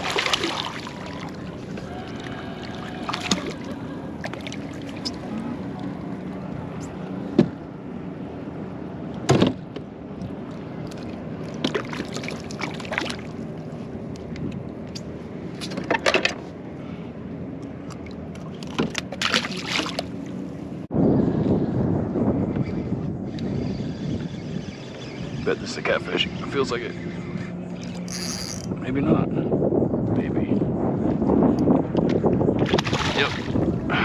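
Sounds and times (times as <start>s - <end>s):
splashes and knocks against hull: 0.0s - 5.4s, 10.9s - 13.4s, 18.4s - 20.1s, 32.6s - 33.6s
water sounds: 0.0s - 7.4s, 10.1s - 14.0s, 17.6s - 20.9s
low hum: 0.0s - 32.6s.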